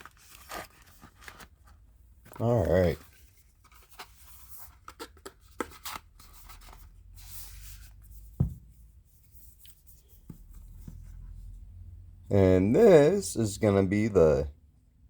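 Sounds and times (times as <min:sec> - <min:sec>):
dull thump: 0:08.4 - 0:08.7.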